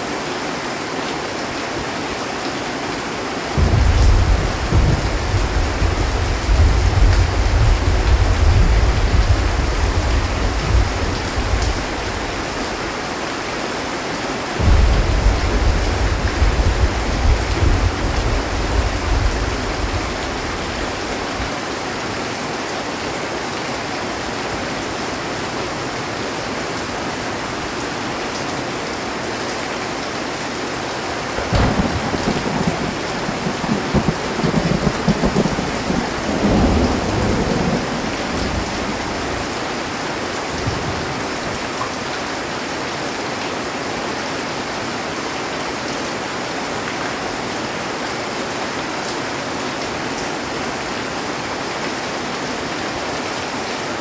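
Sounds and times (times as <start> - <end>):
heavy rain on a metal roof: 0.0 - 54.0
thunder: 3.6 - 12.9, 14.6 - 21.4, 31.3 - 39.7.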